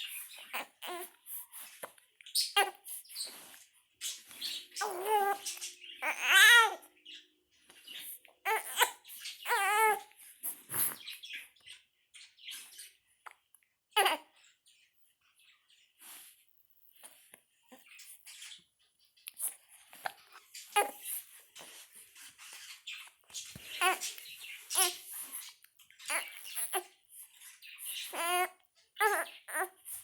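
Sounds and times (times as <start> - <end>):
baby squealing and grunting: 4.8 - 6.8, 8.5 - 10.0.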